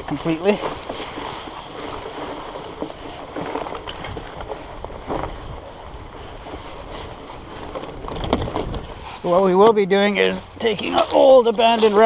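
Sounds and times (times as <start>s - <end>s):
bike low rumble: 0.0s - 12.0s
wind rushing over microphone: 0.7s - 9.5s.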